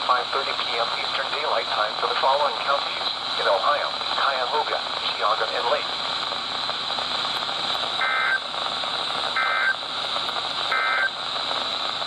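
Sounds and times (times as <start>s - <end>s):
radio hiss: 0.0s - 12.0s
warbling digital data bursts: 8.0s - 8.4s, 9.4s - 9.8s, 10.7s - 11.2s.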